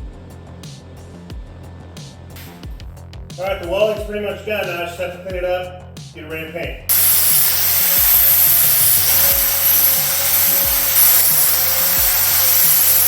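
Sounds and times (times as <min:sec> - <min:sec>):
angle grinder grinding steel: 0:06.9 - 0:13.0.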